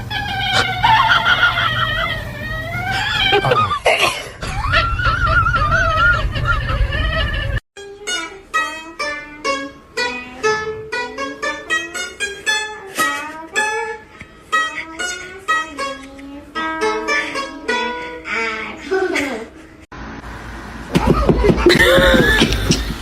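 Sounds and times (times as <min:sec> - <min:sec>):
plucked string instrument melody: 0:07.8 - 0:18.7.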